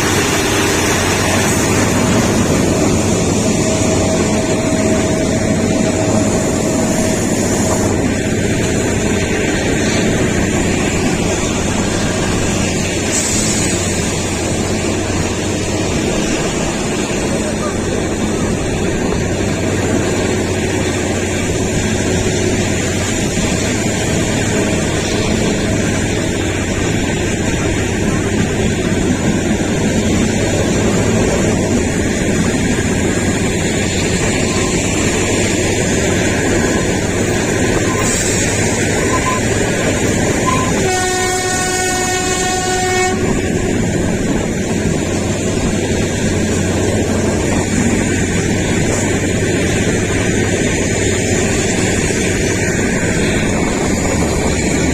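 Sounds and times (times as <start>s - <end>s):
train rumbling along track: 0.0s - 54.9s
train horn blowing: 37.8s - 44.0s.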